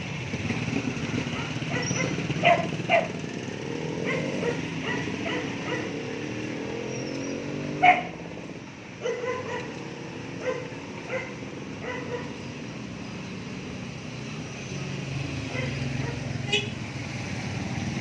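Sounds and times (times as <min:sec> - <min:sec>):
dog barking: 0:01.3 - 0:03.2, 0:04.0 - 0:06.0, 0:07.8 - 0:08.2, 0:09.0 - 0:12.4, 0:15.5 - 0:16.3.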